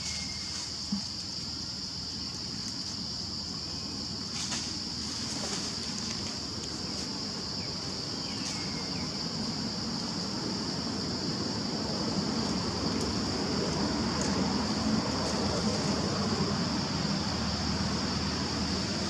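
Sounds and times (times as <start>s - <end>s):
high-pitched insect drone: 0.0s - 0.8s.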